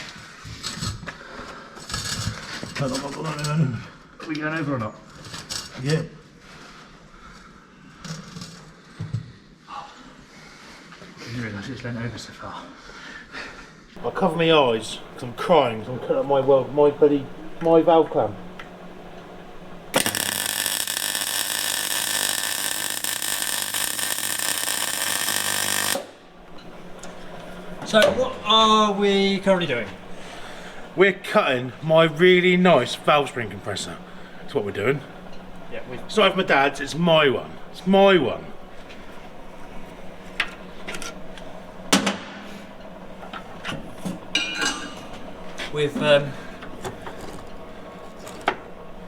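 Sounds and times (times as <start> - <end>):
faint steady hum: 14.0 - 49.0
angle grinder cutting steel: 19.9 - 26.2
metal tools clanking: 44.4 - 45.2.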